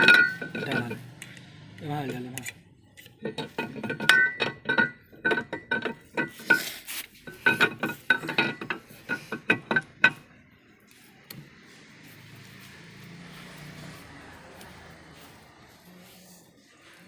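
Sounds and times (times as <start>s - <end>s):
metal tools clinking and ringing: 0.0s - 1.1s, 3.2s - 10.3s.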